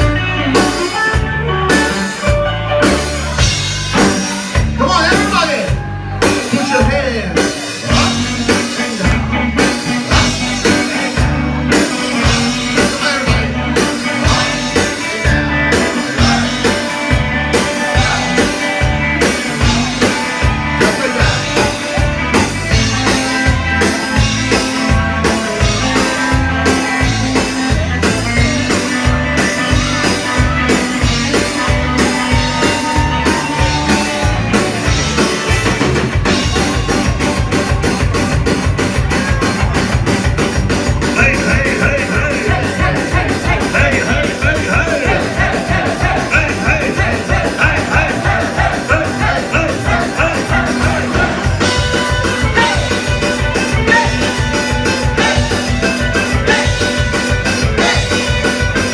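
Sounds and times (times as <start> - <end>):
drum kit and bass beat: 0.0 - 58.9
electric guitar: 0.0 - 58.9
live rock band playing: 0.0 - 58.9
person singing: 9.9 - 22.4, 41.1 - 58.4.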